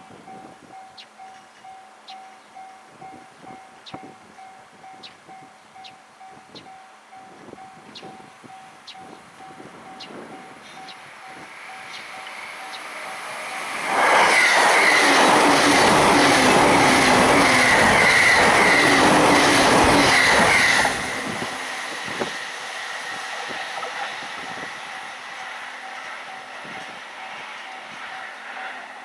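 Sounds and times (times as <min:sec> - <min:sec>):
level crossing warning bell: 0:00.0 - 0:13.8
train passing at high speed: 0:00.0 - 0:29.0.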